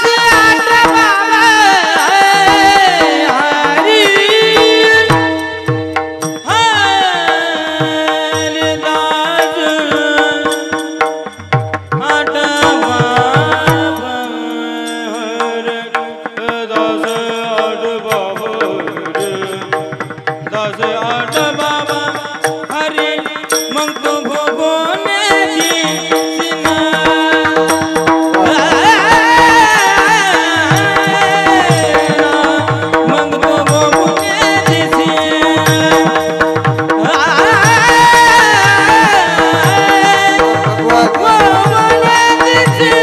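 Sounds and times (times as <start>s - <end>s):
hand-drum strokes: 18.1s - 43.0s
solo voice singing: 20.6s - 43.0s.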